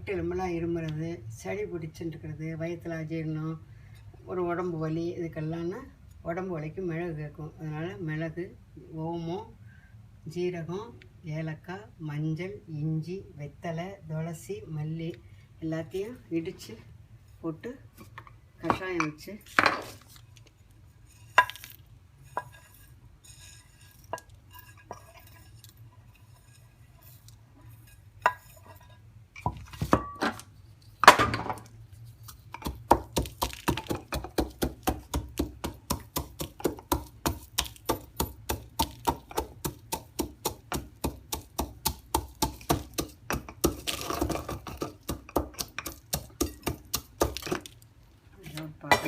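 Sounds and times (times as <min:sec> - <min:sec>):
pestle pounding spices in mortar: 0:32.2 - 0:47.8.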